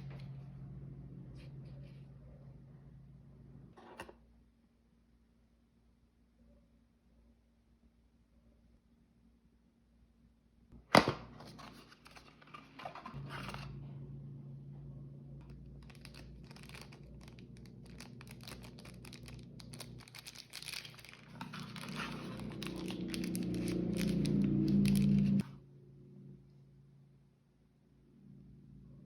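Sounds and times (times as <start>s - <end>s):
wrapping tearing and crinkling: 15.4s - 25.4s
packaging snapping: 15.8s - 25.4s.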